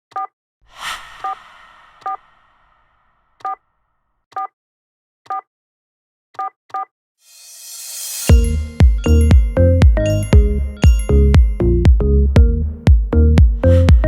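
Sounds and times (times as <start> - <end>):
noisy swell: 0.7 - 3.1.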